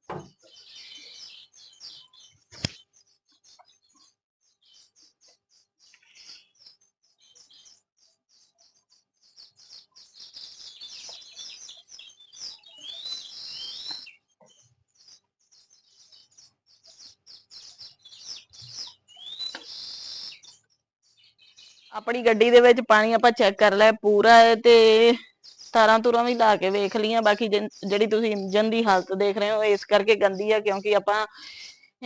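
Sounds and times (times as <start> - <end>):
birds chirping: 0.0 - 32.0
rising whistled bird notes: 11.4 - 14.2, 17.6 - 20.5.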